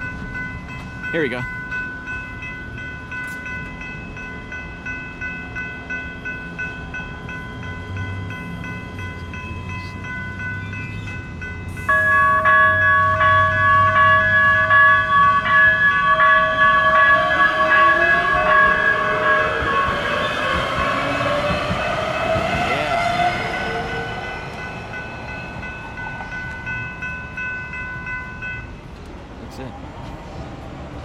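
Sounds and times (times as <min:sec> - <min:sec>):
warning bell ringing: 0:00.0 - 0:28.8
train electric motor whine: 0:02.3 - 0:26.8.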